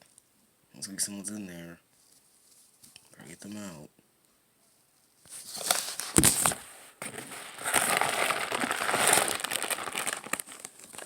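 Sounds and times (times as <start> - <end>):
packaging crinkling and rustling: 5.3 - 11.0.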